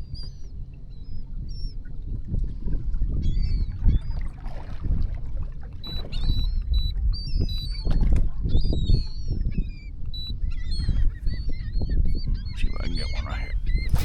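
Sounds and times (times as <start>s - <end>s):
seabirds calling: 0.0s - 14.0s
steady low rumble: 8.4s - 14.0s.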